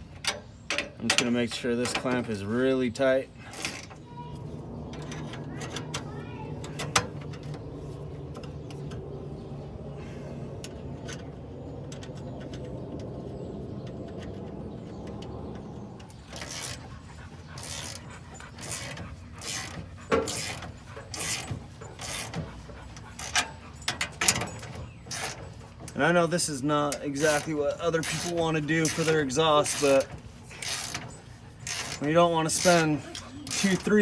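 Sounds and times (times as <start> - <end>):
steady low hum: 0.0 - 34.0
ratchet clicking: 16.3 - 16.9, 17.6 - 26.0, 26.8 - 34.0.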